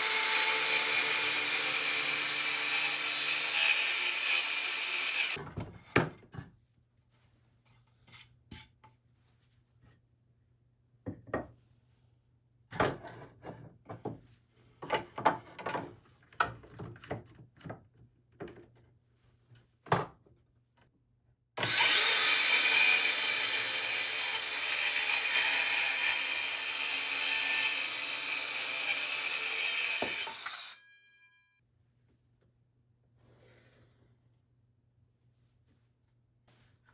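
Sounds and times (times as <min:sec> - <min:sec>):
power tool running: 0:00.0 - 0:05.4, 0:21.6 - 0:30.9.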